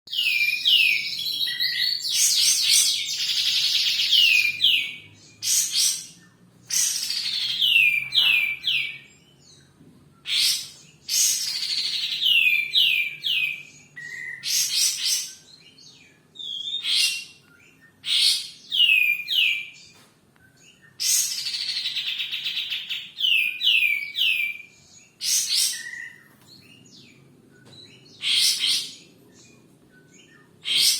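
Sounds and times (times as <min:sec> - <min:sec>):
songbird whistling: 0:00.1 - 0:09.1, 0:10.2 - 0:19.8, 0:20.4 - 0:26.3.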